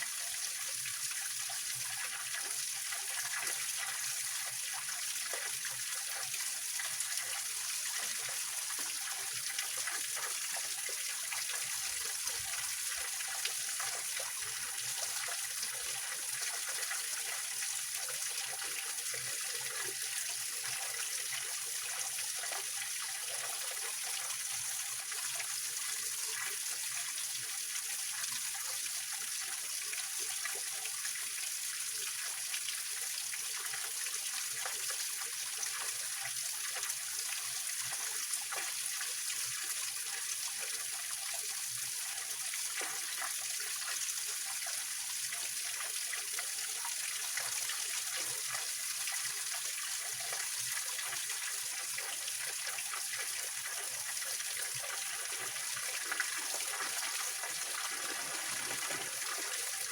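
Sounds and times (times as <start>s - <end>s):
stream splashing over rocks: 53.1s - 59.9s.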